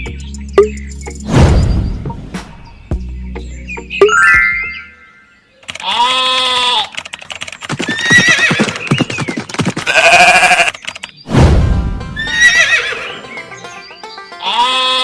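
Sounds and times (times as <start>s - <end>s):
background music: 0.0s - 5.4s, 11.4s - 15.0s
low thud: 1.3s - 2.1s
farm animal calls: 5.6s - 7.0s, 9.8s - 10.9s, 12.2s - 15.0s.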